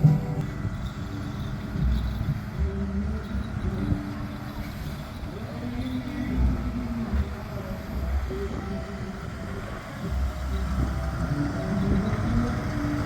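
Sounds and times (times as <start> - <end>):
faint christmas song from loudspeaker: 0.0 - 13.0
fire engine rumbling: 0.0 - 13.0.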